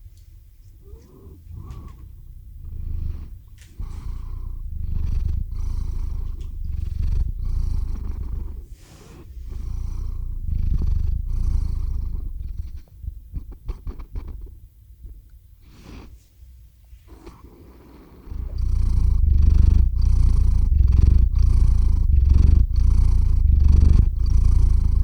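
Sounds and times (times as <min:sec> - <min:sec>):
cat purring: 0:00.0 - 0:25.0
faint clicks: 0:00.1 - 0:02.2, 0:06.2 - 0:07.0.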